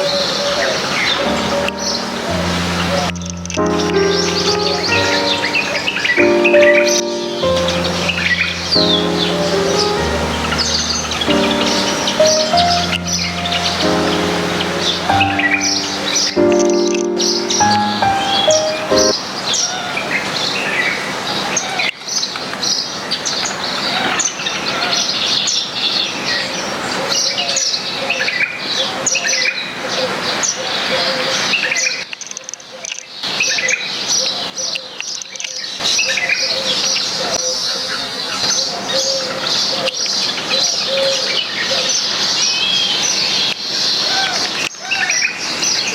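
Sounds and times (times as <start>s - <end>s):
soft background music: 1.2s - 19.2s.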